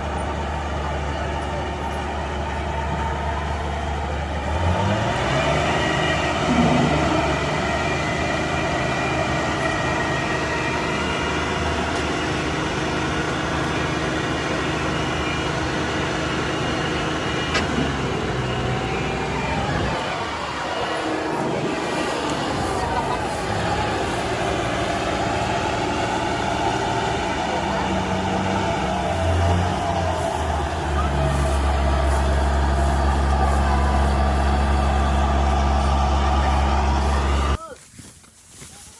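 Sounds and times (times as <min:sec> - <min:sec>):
diesel engines running: 0:00.0 - 0:38.7
engine revving: 0:03.8 - 0:37.6.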